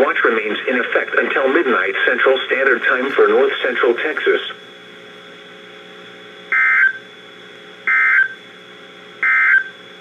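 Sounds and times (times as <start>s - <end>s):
receiver hiss and hum: 0.0s - 10.0s
buzzy data tones: 6.5s - 7.1s, 7.8s - 8.4s, 9.2s - 9.8s.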